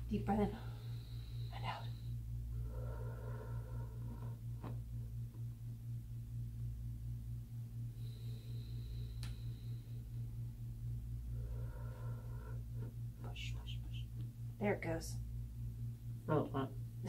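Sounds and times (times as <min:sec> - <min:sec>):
low pulsing machine hum: 0:00.0 - 0:17.0
faint click: 0:09.2 - 0:09.4.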